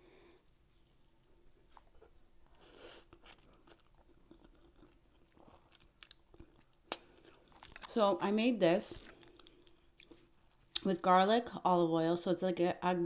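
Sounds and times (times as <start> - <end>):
wet chewing sounds: 0.2 - 8.0, 8.9 - 10.9.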